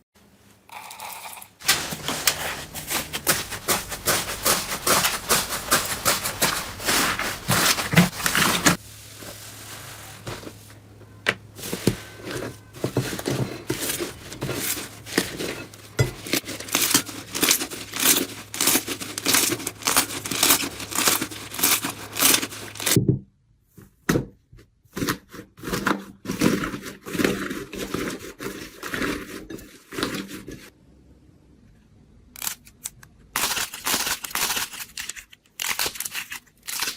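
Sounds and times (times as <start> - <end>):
material crinkling and tearing: 1.6 - 10.6, 13.0 - 23.0, 33.4 - 36.9.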